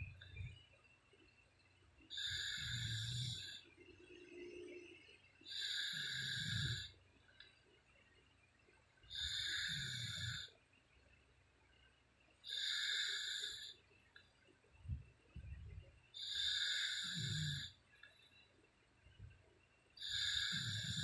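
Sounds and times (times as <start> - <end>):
woman snoring: 2.2 - 3.6, 5.5 - 6.9, 9.1 - 10.5, 12.5 - 13.7, 16.2 - 17.7, 20.0 - 21.0.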